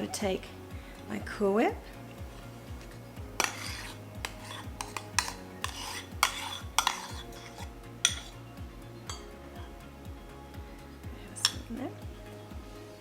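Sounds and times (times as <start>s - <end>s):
utensil scraping a mixing bowl: 2.2s - 8.4s.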